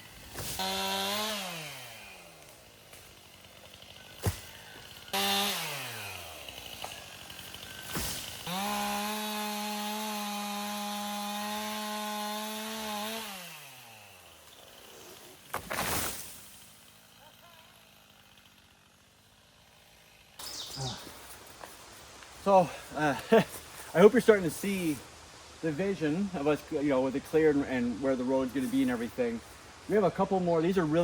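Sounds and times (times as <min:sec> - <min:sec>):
chainsaw revving: 0:00.0 - 0:21.4.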